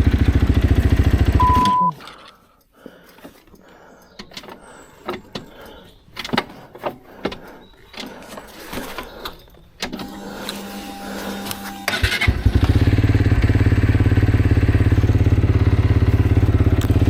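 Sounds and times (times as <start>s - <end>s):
motorcycle clicks and knocks: 2.6s - 10.0s.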